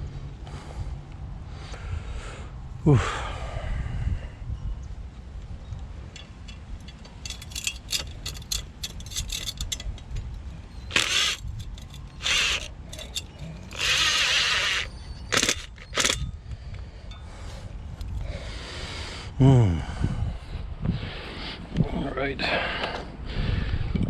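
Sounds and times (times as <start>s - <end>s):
quick clicks and rattles: 6.2s - 16.3s
short hissing whirring bursts: 12.2s - 16.2s.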